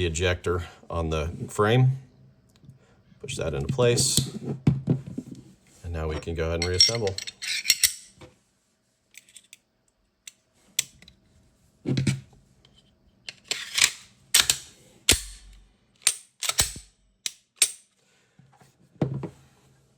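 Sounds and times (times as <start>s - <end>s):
pistol parts clicking and snapping: 10.2s - 11.2s, 13.3s - 17.9s.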